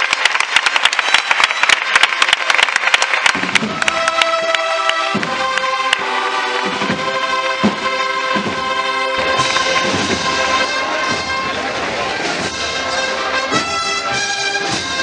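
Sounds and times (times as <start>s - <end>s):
held brass chords: 3.4s - 15.0s
bass drum strokes: 5.1s - 14.9s.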